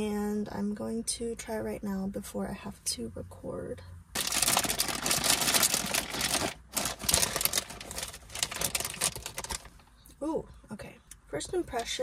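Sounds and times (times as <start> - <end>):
crinkly bag crackling: 4.2 - 9.8.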